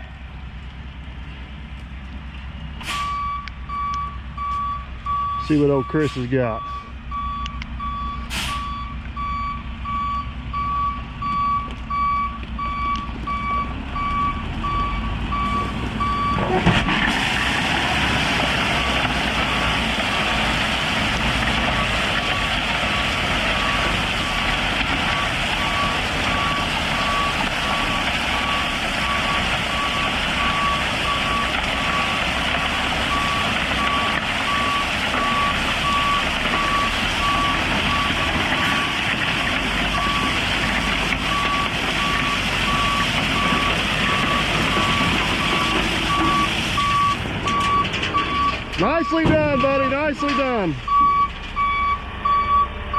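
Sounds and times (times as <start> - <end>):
diesel engine running: 0.0 - 52.9
reversing alarm beeping: 3.0 - 16.5, 25.1 - 32.2, 33.1 - 39.0, 39.9 - 40.4, 41.3 - 52.8.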